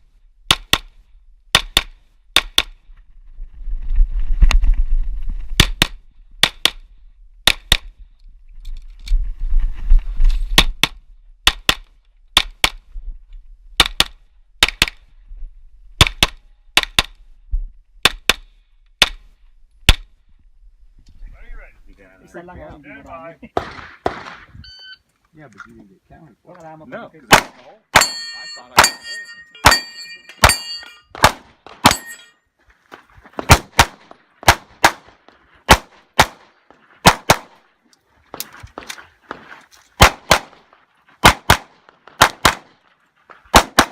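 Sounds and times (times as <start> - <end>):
pistol shots: 23.6 - 24.5, 27.3 - 28.2, 28.8 - 32.1, 33.4 - 37.6, 40.0 - 42.8, 43.5 - 43.9.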